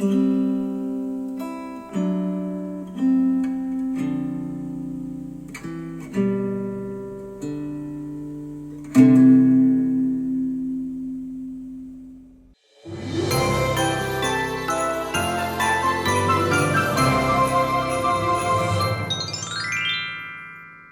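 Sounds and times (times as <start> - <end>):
acoustic guitar through speakers: 0.0 - 12.4.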